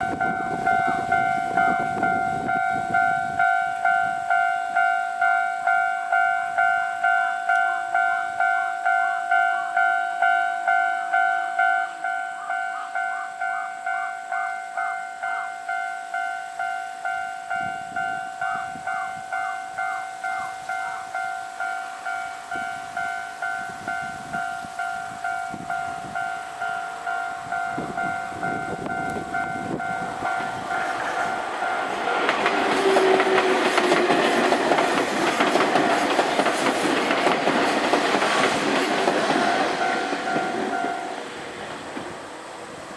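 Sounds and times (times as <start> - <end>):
level-crossing alarm bell ringing: 0.0 - 42.9
train wheels clattering: 27.7 - 42.6.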